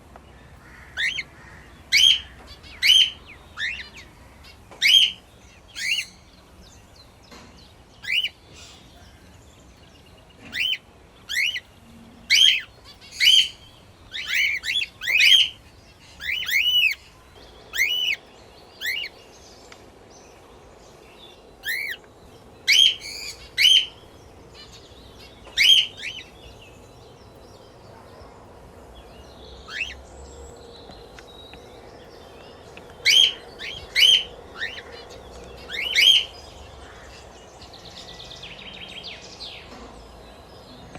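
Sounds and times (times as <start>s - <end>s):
parrots chirping: 0.6s - 6.2s, 8.0s - 9.0s, 10.4s - 17.1s, 17.7s - 19.2s, 21.6s - 22.0s, 22.6s - 26.6s, 29.5s - 30.5s, 32.5s - 38.7s.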